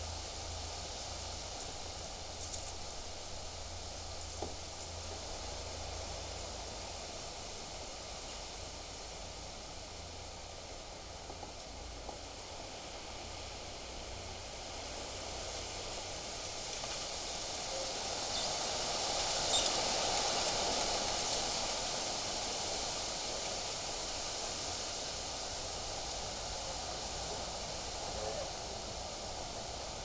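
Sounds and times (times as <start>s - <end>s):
wind gusting through trees: 15.6s - 30.0s
leaves rustling: 16.5s - 30.0s.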